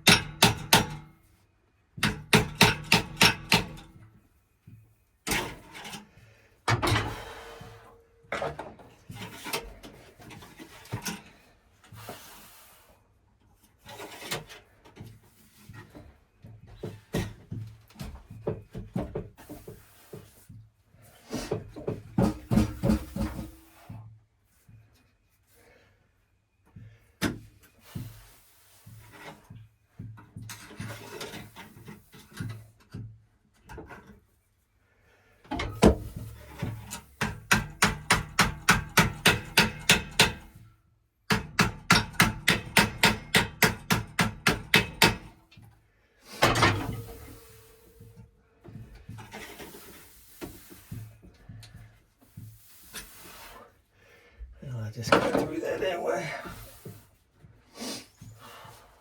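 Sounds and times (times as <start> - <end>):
scraping and knocks: 21.8 - 23.6.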